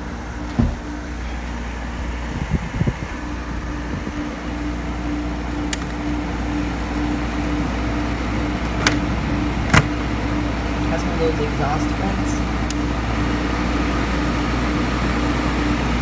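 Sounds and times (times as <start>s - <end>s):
window air conditioner running: 0.0s - 16.0s
soft knocks: 0.5s - 0.8s.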